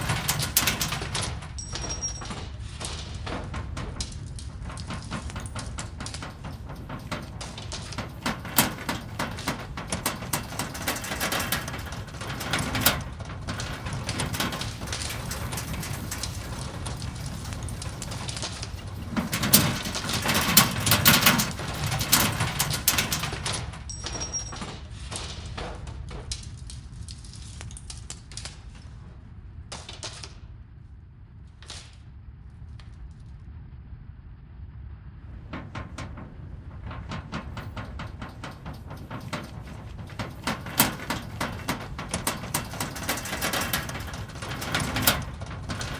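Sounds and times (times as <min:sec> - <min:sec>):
crackling and rattling clicks: 0:00.0 - 0:24.4, 0:35.3 - 0:45.9
deep rumble: 0:03.3 - 0:23.8, 0:35.3 - 0:45.9.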